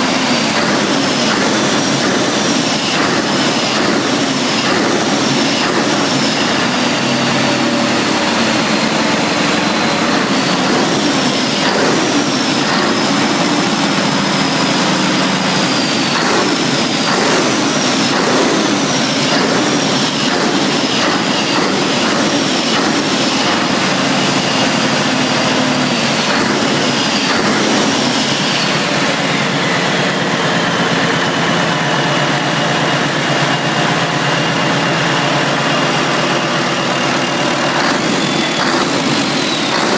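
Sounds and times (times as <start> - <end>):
large engine running: 0.0 - 39.9
sharp knocks: 9.6 - 28.8, 37.6 - 39.9.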